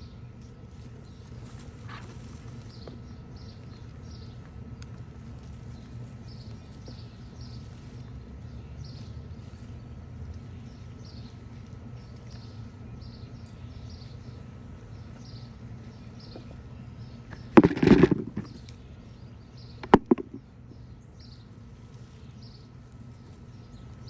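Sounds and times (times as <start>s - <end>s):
birds chirping: 0.0s - 24.0s
low steady hum: 0.0s - 24.0s
sharp knocks: 17.3s - 18.6s, 19.8s - 20.4s
hands scraping soil: 17.3s - 18.8s, 19.8s - 20.4s.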